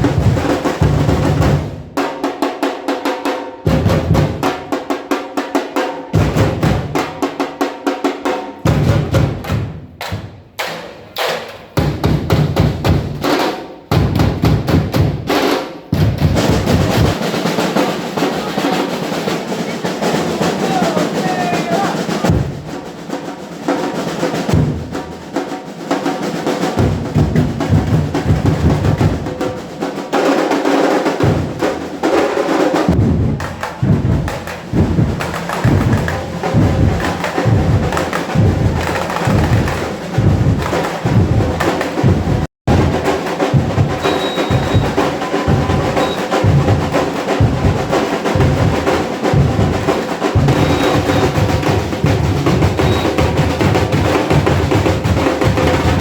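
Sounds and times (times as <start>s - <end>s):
drum group playing: 0.0s - 56.0s
snare rolls: 8.7s - 13.6s, 30.2s - 56.0s
deep bass drums beating: 32.9s - 56.0s.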